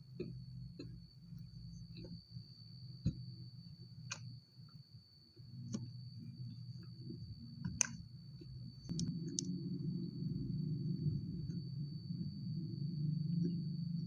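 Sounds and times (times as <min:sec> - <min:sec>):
chewing with wet clicks and smacks: 0:00.1 - 0:02.2.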